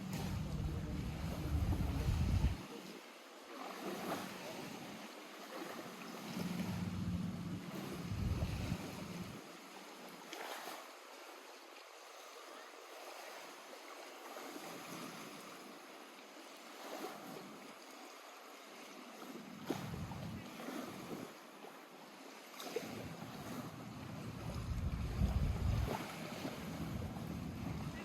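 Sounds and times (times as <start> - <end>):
water lapping at shore: 0.0 - 28.0
low rumble: 0.2 - 2.6, 6.4 - 9.4.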